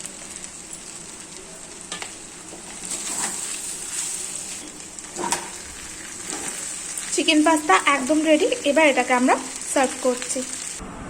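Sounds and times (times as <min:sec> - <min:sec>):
pasta sizzling in frying pan: 0:00.0 - 0:10.8
spatula scraping and knocking pan: 0:01.9 - 0:06.7.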